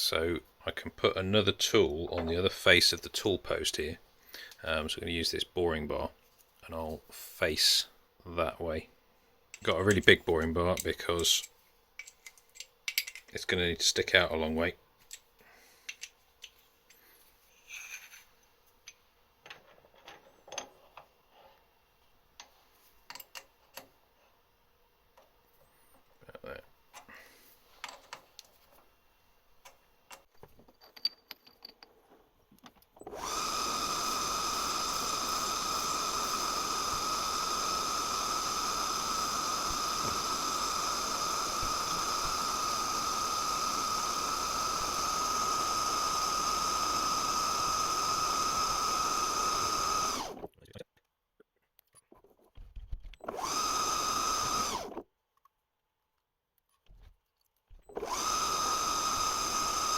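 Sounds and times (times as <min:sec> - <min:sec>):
metal lathe whining: 0:33.1 - 0:50.4, 0:53.2 - 0:55.0, 0:58.0 - 0:59.9.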